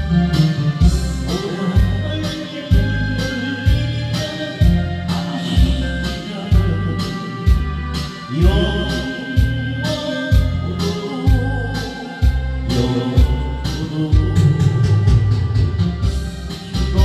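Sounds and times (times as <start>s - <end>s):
karaoke backing track: 0.0s - 17.0s
person singing pop song: 0.0s - 17.0s.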